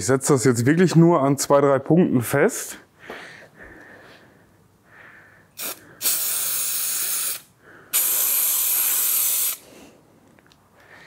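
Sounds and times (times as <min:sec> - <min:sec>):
aerosol can spraying: 0:05.6 - 0:09.6.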